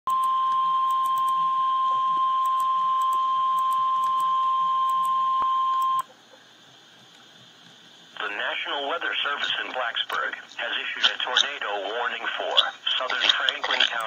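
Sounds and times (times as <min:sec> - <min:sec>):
high alert beep tone: 0:00.1 - 0:06.0
faint radio hiss: 0:06.0 - 0:14.0.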